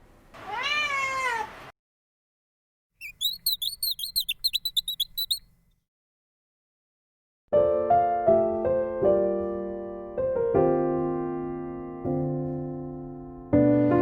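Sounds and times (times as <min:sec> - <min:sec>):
rapid high chirps: 0:03.0 - 0:05.5
piano music: 0:07.6 - 0:14.0.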